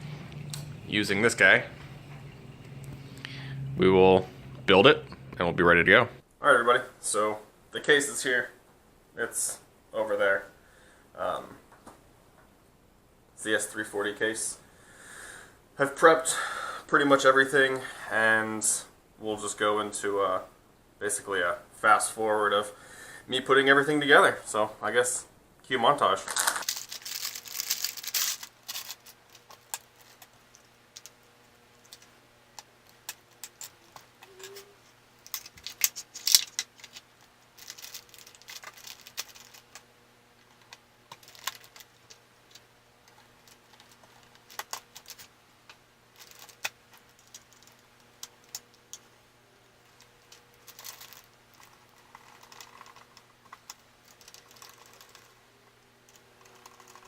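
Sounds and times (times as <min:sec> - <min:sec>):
faint low hum: 0:00.0 - 0:57.0
packaging rustling: 0:26.3 - 0:31.2, 0:32.8 - 0:39.8, 0:40.4 - 0:45.3, 0:46.1 - 0:48.7, 0:50.0 - 0:55.4
computer parts clicking and tapping: 0:50.0 - 0:55.4, 0:56.1 - 0:57.0.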